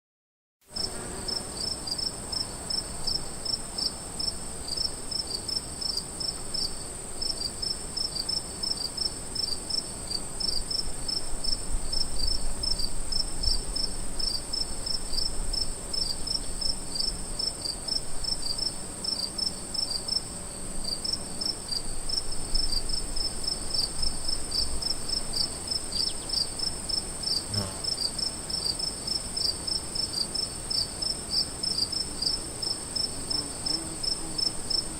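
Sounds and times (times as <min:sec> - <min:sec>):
crickets chirping: 0:00.8 - 0:34.9.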